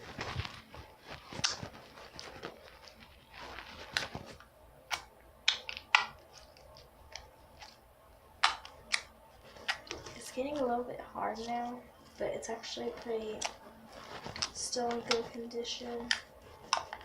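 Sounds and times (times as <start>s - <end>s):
faint crackle: 0.0s - 4.5s
slime sticky clicks and pops: 8.4s - 9.1s.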